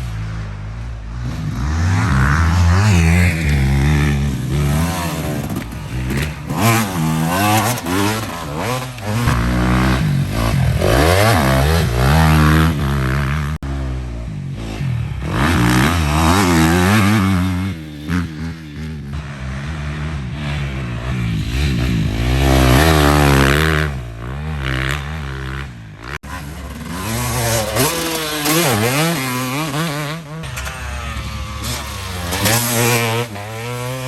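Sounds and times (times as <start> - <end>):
dirt bike engine revving: 0.0 - 34.0.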